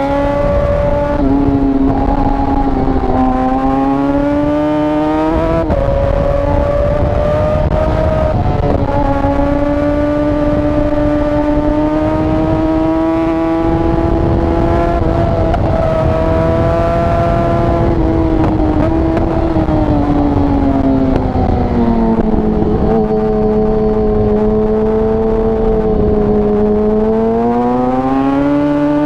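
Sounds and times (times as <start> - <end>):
motorcycle engine revving high: 0.0 - 29.0.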